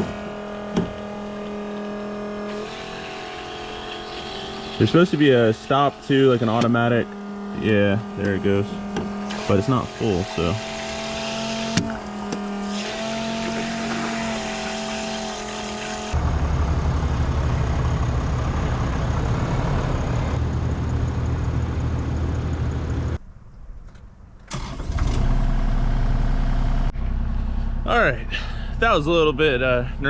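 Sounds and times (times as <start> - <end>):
electric fuel pump whining: 0.0 - 20.4
low engine rumble: 16.2 - 30.0.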